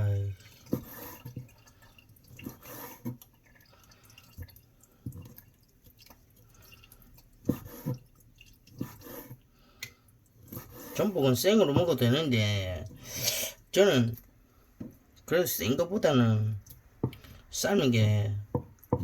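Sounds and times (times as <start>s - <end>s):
water dripping: 0.0s - 10.6s, 13.6s - 19.0s
wet clicks and knocks: 16.6s - 17.4s, 18.4s - 19.0s.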